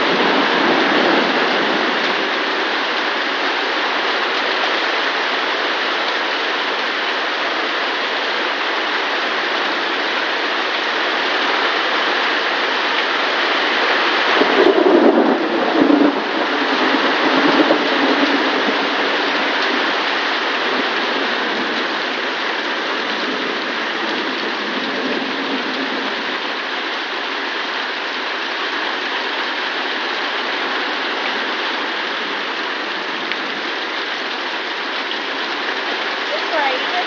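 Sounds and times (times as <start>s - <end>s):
thunder rumble: 0.0s - 3.7s, 14.3s - 19.9s
heavy rain: 0.0s - 37.0s.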